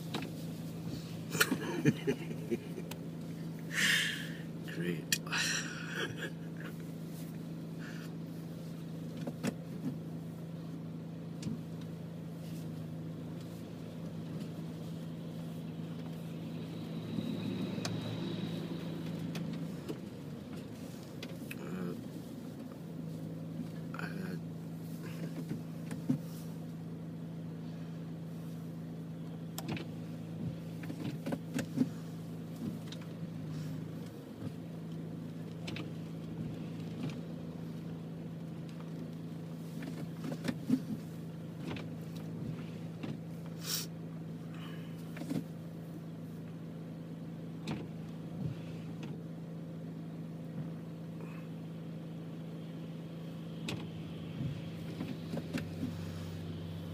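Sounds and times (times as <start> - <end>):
motor hum: 0.0 - 56.9.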